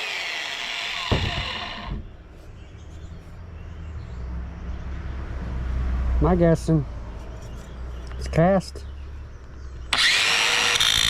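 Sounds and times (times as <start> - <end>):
power drill spinning down: 0.0 - 1.9, 9.9 - 11.0.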